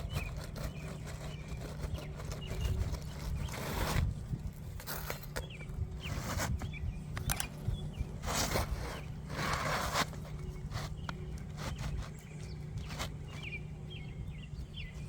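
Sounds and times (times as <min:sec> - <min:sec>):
bird chirps: 0:00.0 - 0:03.9, 0:05.1 - 0:15.0
rustling or scuffing: 0:06.0 - 0:06.8, 0:08.1 - 0:13.6.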